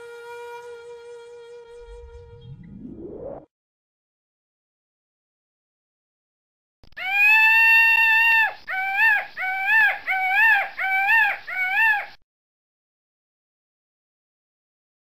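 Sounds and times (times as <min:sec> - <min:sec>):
peacock calling: 0:07.1 - 0:12.1.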